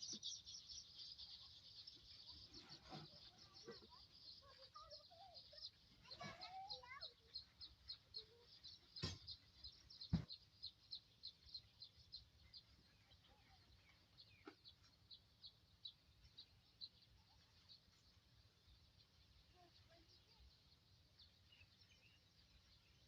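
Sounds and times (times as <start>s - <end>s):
faint bird chirping: 0.0s - 23.0s.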